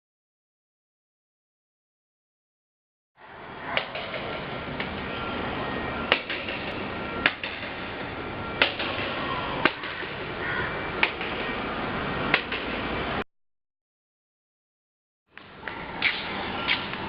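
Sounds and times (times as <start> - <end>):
steady background noise: 3.2 - 13.2, 15.3 - 17.0
sharp knocks: 6.1 - 7.7, 11.0 - 11.5, 12.3 - 12.8.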